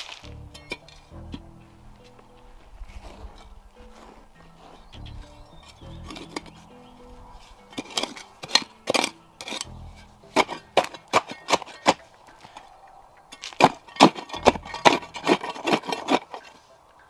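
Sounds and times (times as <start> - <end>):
shovel digging into soil: 2.9 - 12.7, 13.3 - 16.6.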